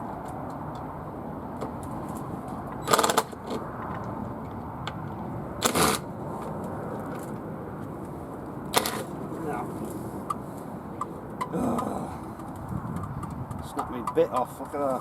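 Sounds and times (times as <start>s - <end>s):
impact driver bursts: 5.6s - 6.0s
wind noise on microphone: 12.1s - 14.2s.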